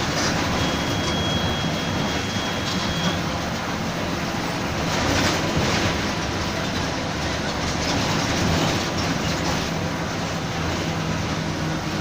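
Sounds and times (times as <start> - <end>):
bus diesel engine droning: 0.0 - 12.0.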